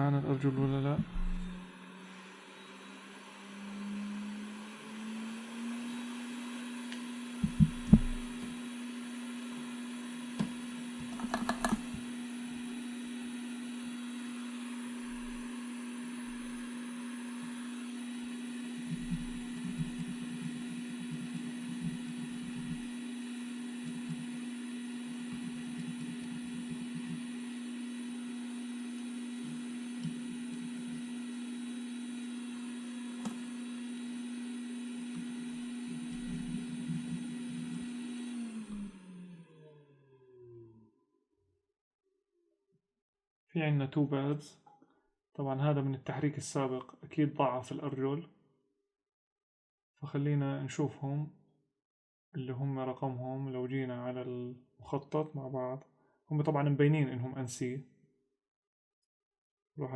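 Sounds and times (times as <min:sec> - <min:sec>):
hot air blower humming: 0:00.0 - 0:39.3
tools knocking and clicking: 0:10.4 - 0:12.0.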